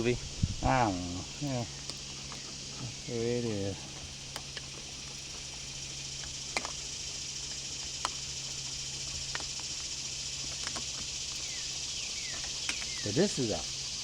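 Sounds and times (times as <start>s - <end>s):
high insect chorus: 0.0s - 14.0s
low steady hum: 0.0s - 14.0s.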